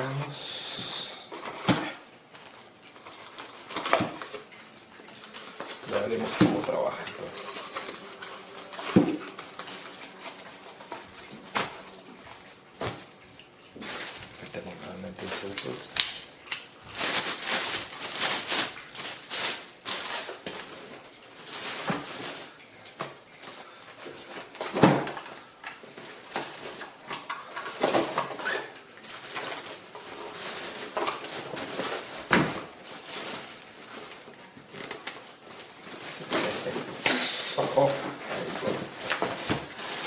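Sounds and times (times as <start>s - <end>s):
tools rustling and clattering: 13.8s - 40.0s.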